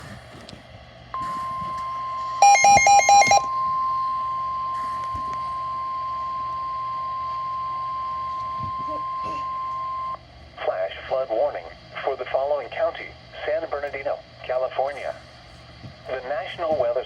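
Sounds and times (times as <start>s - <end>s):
steady electronic alarm tone: 1.1s - 10.2s
harsh beeps: 1.2s - 10.2s.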